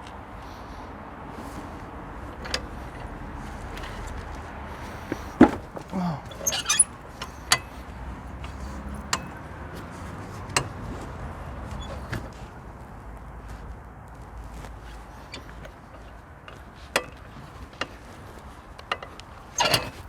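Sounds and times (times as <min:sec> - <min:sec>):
metallic clinks and knocks: 0:05.1 - 0:07.8.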